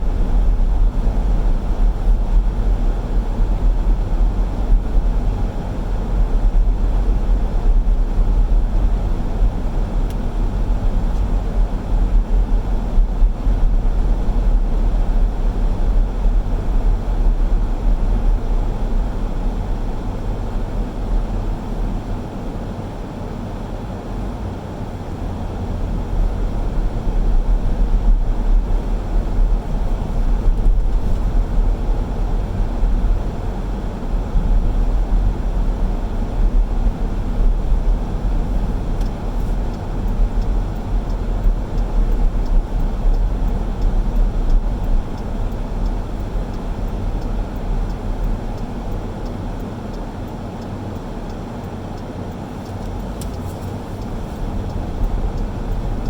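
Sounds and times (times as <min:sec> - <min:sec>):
car engine and road noise: 0:00.0 - 0:56.0.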